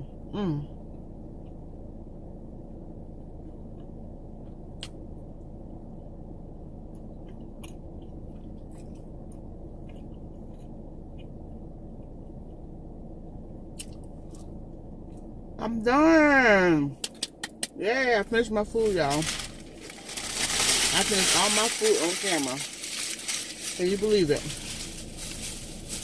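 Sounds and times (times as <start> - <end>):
low background hum: 0.0 - 26.0
person chewing food: 6.8 - 12.9.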